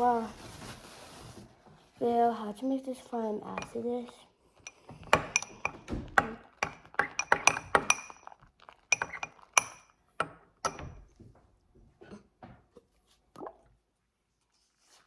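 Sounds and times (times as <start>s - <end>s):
utensil clinking against bowl: 3.5s - 3.9s, 4.6s - 11.1s.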